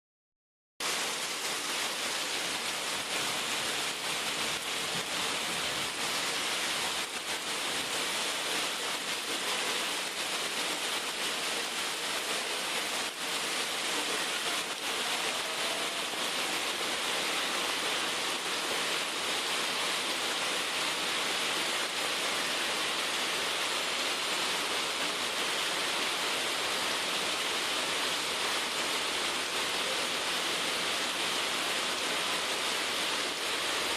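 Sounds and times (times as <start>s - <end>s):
heavy rain falling: 0.8s - 33.9s.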